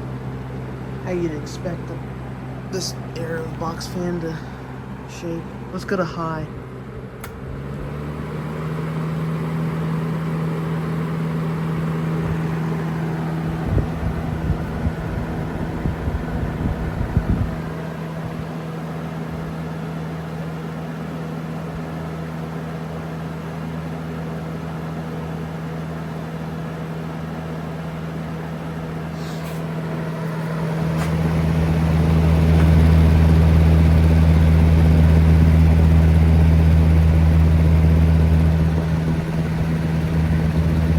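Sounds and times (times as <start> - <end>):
box fan motor hum: 0.0 - 40.9
deep rumble: 13.4 - 18.4, 30.5 - 40.9
fan shaking thumps: 13.4 - 18.4, 29.7 - 40.9.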